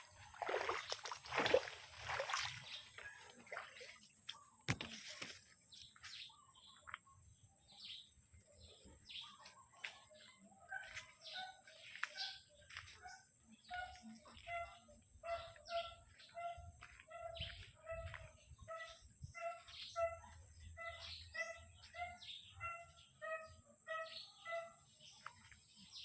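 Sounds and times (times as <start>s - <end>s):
repeated bird calls: 4.3s - 26.0s
birds chirping and calling: 5.8s - 26.0s.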